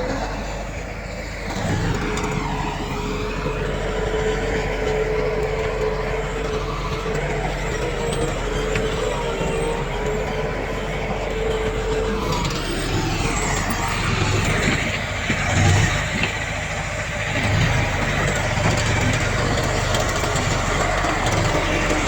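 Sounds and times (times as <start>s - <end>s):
diesel engine drone: 0.0s - 22.0s.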